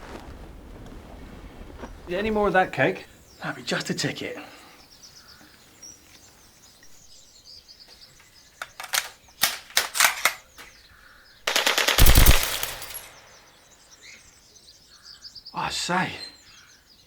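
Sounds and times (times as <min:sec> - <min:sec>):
gunshots and bursts: 0:08.7 - 0:10.6, 0:11.4 - 0:13.3
machine-gun fire: 0:11.5 - 0:13.2.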